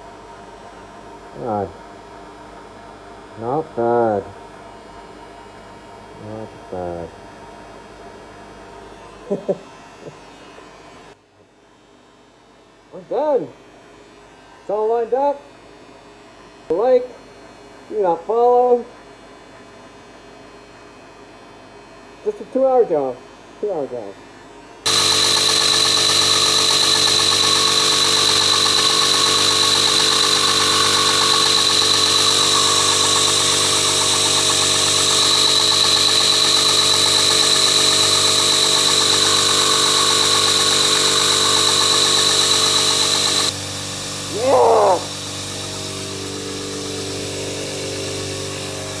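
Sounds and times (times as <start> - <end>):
belt grinder whining: 24.9 - 43.6.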